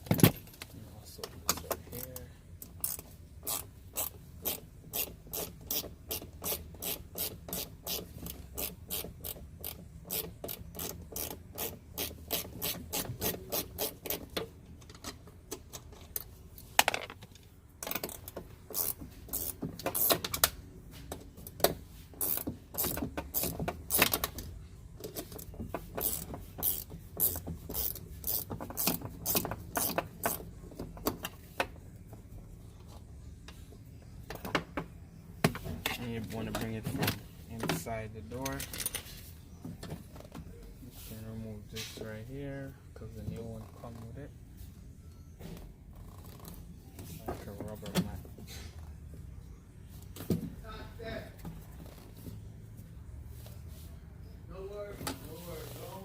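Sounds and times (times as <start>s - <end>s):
ratchet wrench clicking: 1.9s - 14.4s, 17.8s - 20.5s, 22.2s - 24.3s, 25.2s - 30.5s.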